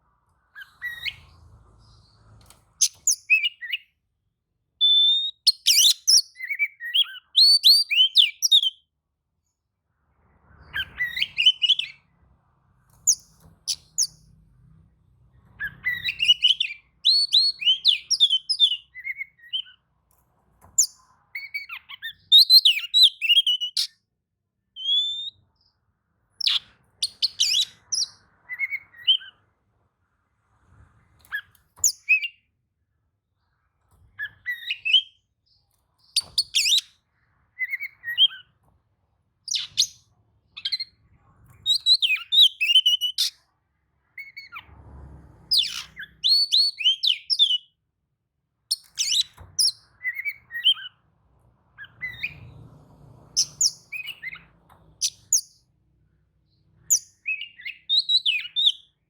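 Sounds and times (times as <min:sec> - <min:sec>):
magpie-robin singing: 0:00.5 - 0:02.0, 0:02.8 - 0:04.0, 0:04.8 - 0:08.9, 0:10.7 - 0:12.0, 0:13.0 - 0:14.2, 0:15.6 - 0:19.8, 0:20.8 - 0:24.0, 0:24.7 - 0:25.7, 0:26.4 - 0:29.4, 0:31.3 - 0:32.5, 0:34.2 - 0:38.6, 0:39.4 - 0:41.0, 0:41.6 - 0:43.4, 0:44.2 - 0:44.6, 0:45.5 - 0:47.8, 0:48.7 - 0:51.0, 0:51.8 - 0:52.5, 0:53.4 - 0:55.7, 0:56.5 - 0:59.0.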